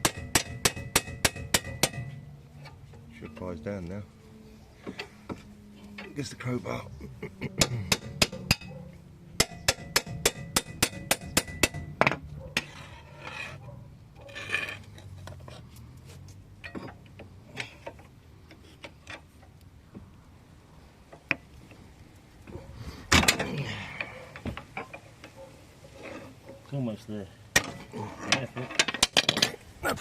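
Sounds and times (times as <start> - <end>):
metal tools clinking: 5.8 - 6.3.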